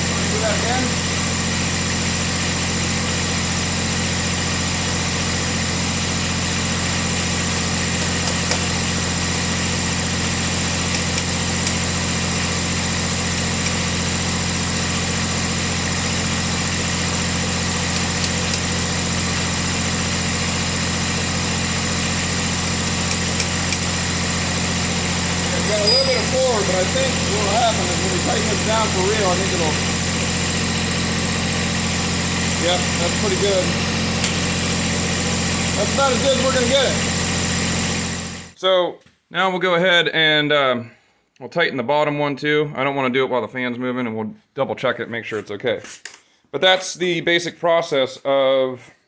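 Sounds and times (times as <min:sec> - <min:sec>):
tractor engine idling: 0:00.0 - 0:38.6.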